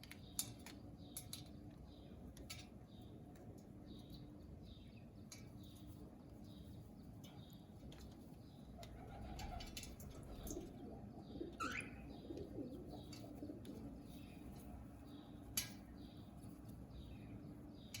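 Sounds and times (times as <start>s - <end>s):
small high bird chirps: 3.8s - 18.0s
low wavering bird cooing: 8.8s - 14.5s
rising bird chirp: 10.5s - 13.0s.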